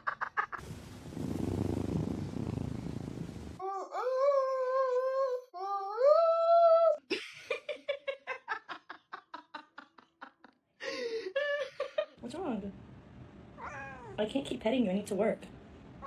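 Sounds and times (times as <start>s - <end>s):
cat purring: 0.7s - 3.6s
cat meowing: 13.6s - 14.2s.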